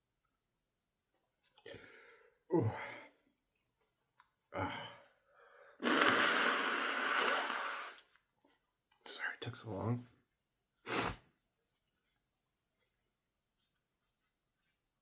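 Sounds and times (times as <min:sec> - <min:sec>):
loud hissing blow of breath: 0:05.8 - 0:08.0.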